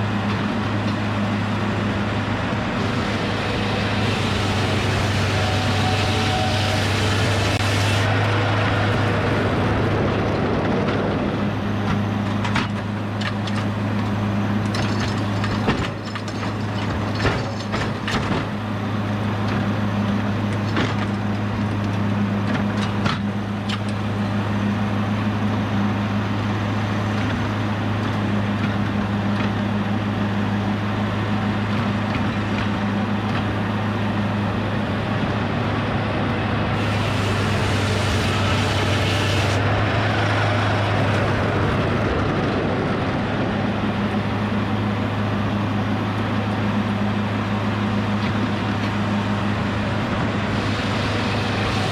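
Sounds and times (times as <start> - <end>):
saw cutting through log: 0.0 - 9.8, 36.7 - 41.8, 47.9 - 51.9
sawmill engine running: 0.0 - 51.9
sharp knocks and clanks: 14.7 - 18.6.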